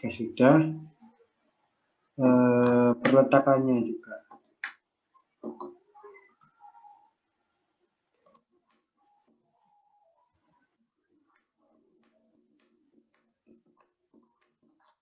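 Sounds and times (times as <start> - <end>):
computer mouse and keyboard clicking: 8.1 - 8.9.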